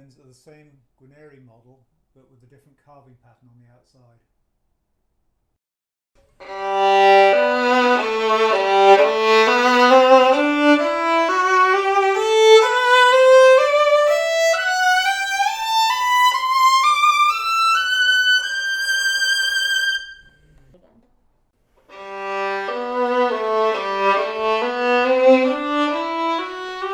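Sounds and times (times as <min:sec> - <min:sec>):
solo violin playing scale: 0:06.4 - 0:20.4, 0:21.9 - 0:26.9.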